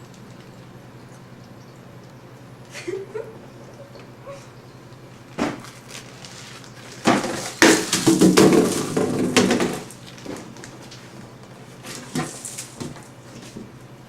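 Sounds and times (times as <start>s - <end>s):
hard objects knocking: 7.0s - 10.5s.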